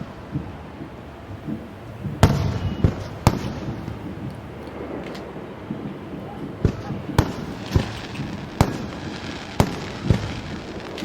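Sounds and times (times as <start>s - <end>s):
distant fireworks thuds: 0.0s - 11.0s
fireworks bangs with rumbling echo: 0.0s - 11.0s.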